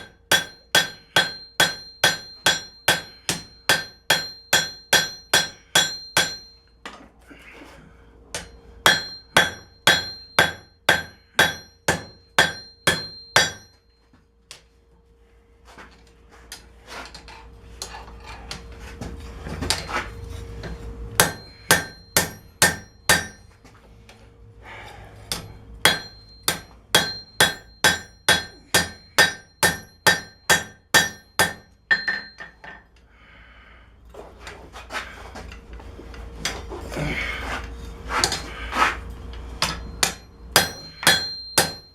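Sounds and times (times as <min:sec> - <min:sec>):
hammer striking steel on anvil: 0:00.0 - 0:06.7, 0:08.3 - 0:13.8, 0:19.7 - 0:23.6, 0:25.3 - 0:32.9, 0:39.6 - 0:41.9.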